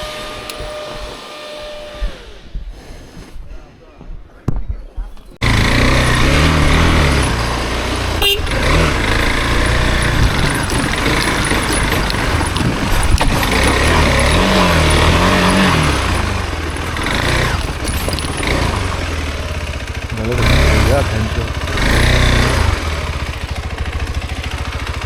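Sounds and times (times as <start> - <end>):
single-cylinder motorcycle engine: 5.4 - 25.0.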